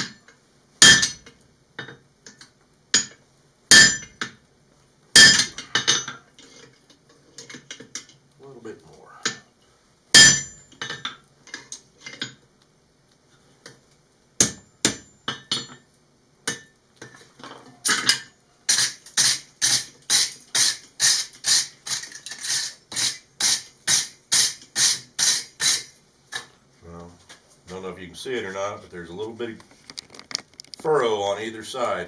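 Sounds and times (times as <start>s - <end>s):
hammer striking hot steel: 0.8s - 1.3s, 3.0s - 4.4s, 5.2s - 6.1s, 10.2s - 11.0s, 14.4s - 15.8s.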